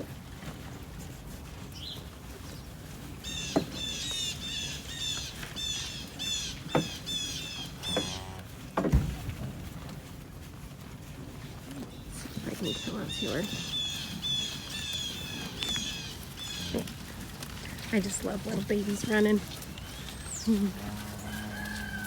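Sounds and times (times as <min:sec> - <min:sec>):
songbird chirping: 0:01.7 - 0:08.4, 0:11.8 - 0:22.0.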